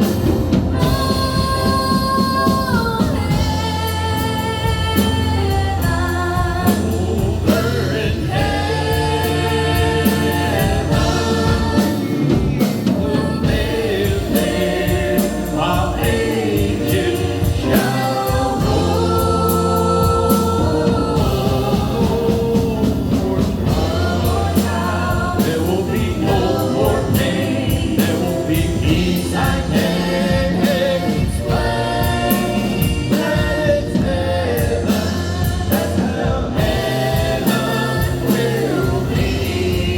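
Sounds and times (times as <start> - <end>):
backing harmonies: 0.0 - 39.9
band with bass and drums: 0.0 - 39.9
gospel song with sung vocals: 0.0 - 39.9.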